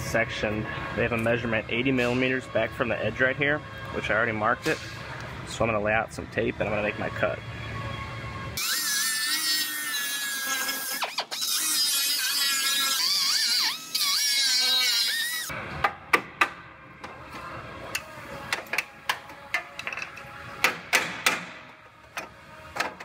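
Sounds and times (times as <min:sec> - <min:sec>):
cut-off wheel cutting steel: 0:08.6 - 0:15.5.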